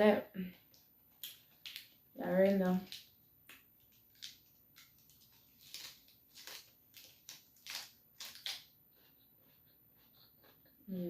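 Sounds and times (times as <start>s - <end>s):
wet chewing clicks and smacks: 3.9s - 10.7s.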